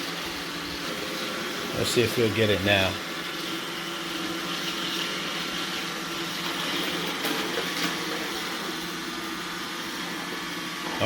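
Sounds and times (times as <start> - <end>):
robot vacuum running: 0.0 - 11.0.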